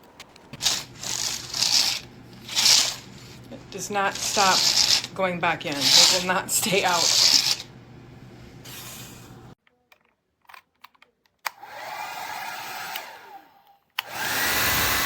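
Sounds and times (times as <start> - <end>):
hair dryer running: 0.5 - 9.6, 11.6 - 15.0
hair dryer switch clicks: 12.8 - 13.1, 14.0 - 14.2.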